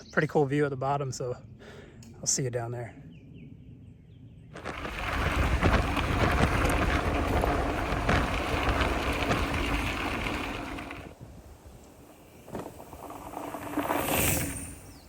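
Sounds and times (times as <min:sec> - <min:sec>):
wind buffeting microphone: 0:03.1 - 0:12.7
tyres crunching on gravel: 0:04.6 - 0:11.2
bike rattling: 0:04.6 - 0:15.0.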